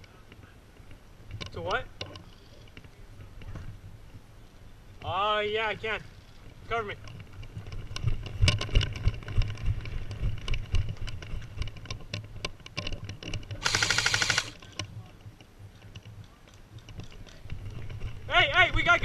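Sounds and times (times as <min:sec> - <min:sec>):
gear knocks and rattles: 0:06.2 - 0:19.0
airsoft gun full-auto burst: 0:13.6 - 0:14.6.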